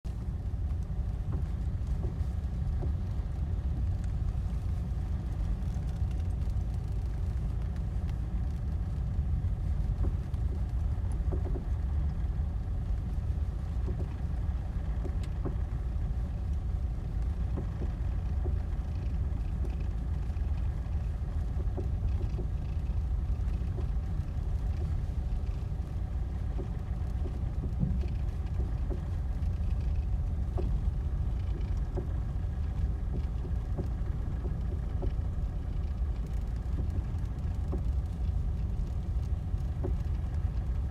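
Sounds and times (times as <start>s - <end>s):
car and road noise rumble: 0.0s - 40.9s
suspension knocking: 9.9s - 12.0s, 13.6s - 40.8s.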